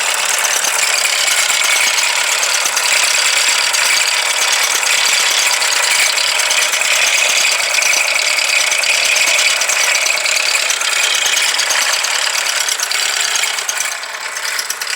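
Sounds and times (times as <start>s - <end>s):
metallic engine rattling: 0.0s - 14.9s.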